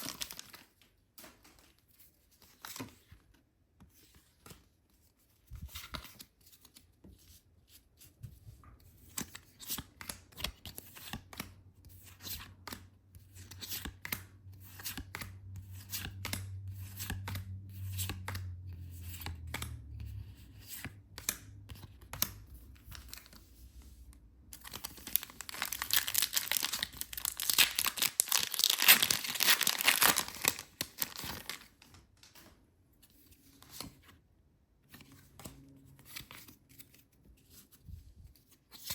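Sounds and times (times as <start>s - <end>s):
packaging being torn open: 24.6s - 31.8s.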